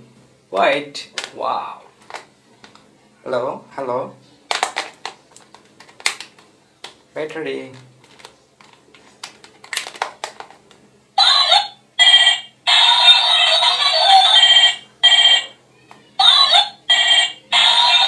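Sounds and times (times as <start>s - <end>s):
plastic clicks: 4.5s - 7.0s, 7.8s - 10.8s
electronic ringing tones: 14.2s - 15.6s.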